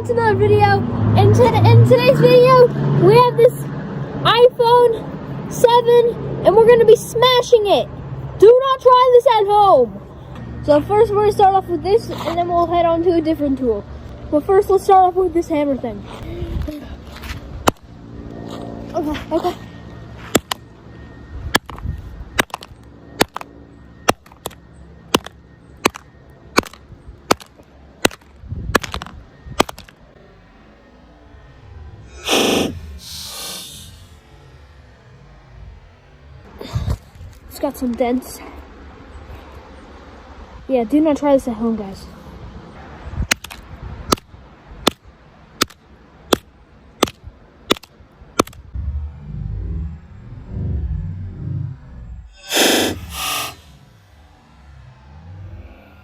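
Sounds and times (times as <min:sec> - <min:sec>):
low rumble: 0:29.1 - 0:37.4, 0:48.6 - 0:56.0.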